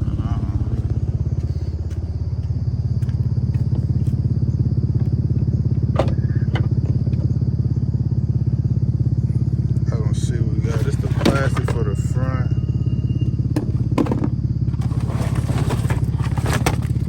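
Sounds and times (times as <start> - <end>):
car engine idling: 0.0 - 17.0
faint high whine: 7.4 - 14.2.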